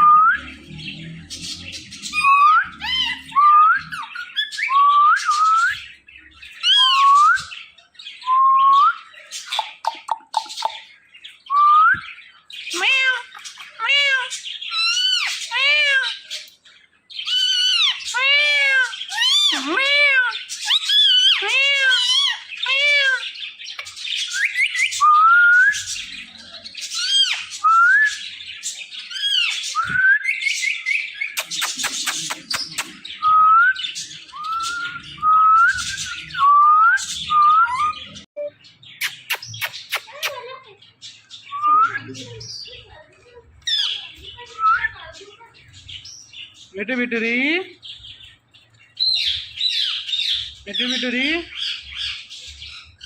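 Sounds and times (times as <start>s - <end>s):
parrot whistling: 2.1s - 5.8s, 6.6s - 7.5s.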